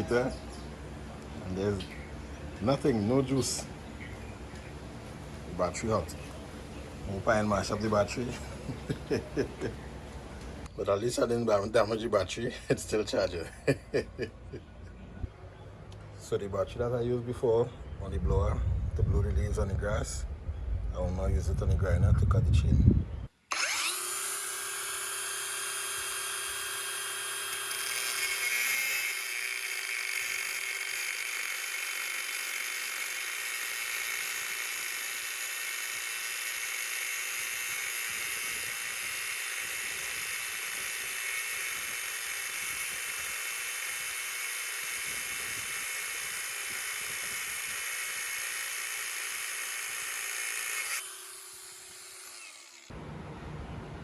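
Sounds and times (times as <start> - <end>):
angle grinder cutting metal chain: 0.0 - 10.7, 23.5 - 52.9.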